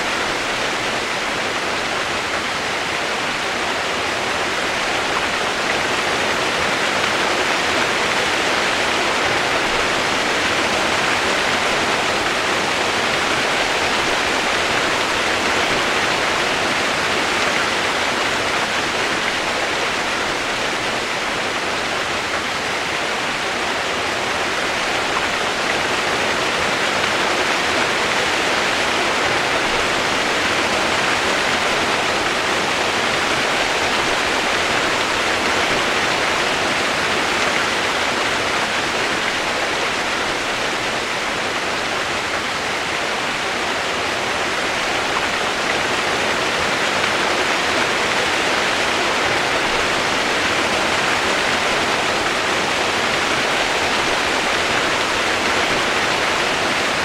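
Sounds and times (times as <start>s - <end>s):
running water rushing: 0.0s - 57.0s.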